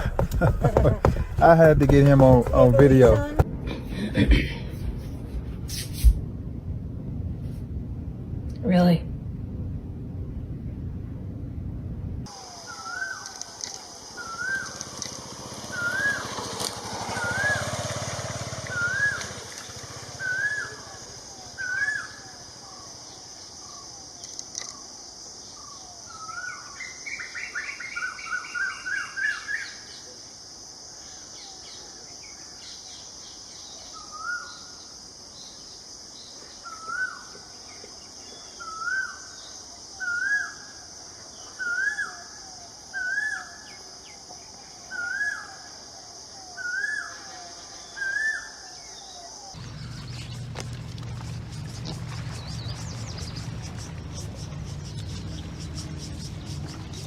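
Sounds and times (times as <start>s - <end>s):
bird calling rising note: 12.4s - 21.0s, 49.6s - 57.0s.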